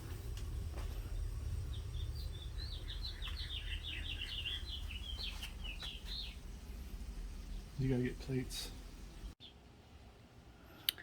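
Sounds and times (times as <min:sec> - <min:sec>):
low rumble: 0:00.0 - 0:09.4
bird chirping: 0:01.0 - 0:09.6.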